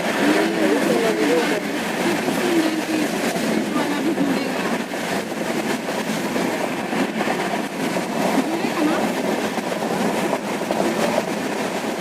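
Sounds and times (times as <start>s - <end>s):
train wheels on rails: 0.0s - 12.0s.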